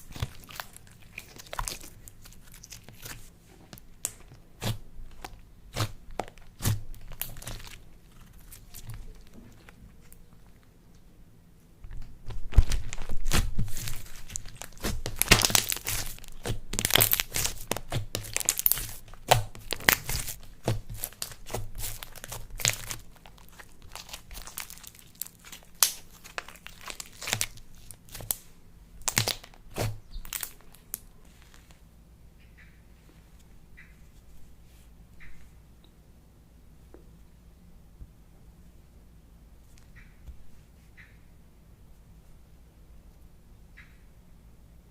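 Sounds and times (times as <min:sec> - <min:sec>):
slime crackling and popping: 0:00.0 - 0:03.3, 0:04.0 - 0:09.3, 0:12.2 - 0:31.7.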